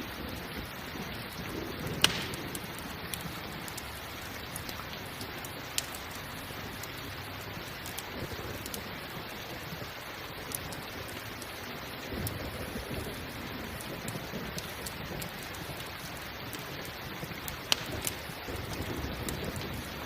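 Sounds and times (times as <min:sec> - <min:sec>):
distant thunder rumble: 0:00.0 - 0:04.6
campfire crackling: 0:00.0 - 0:20.0
steady rain falling: 0:00.0 - 0:20.0.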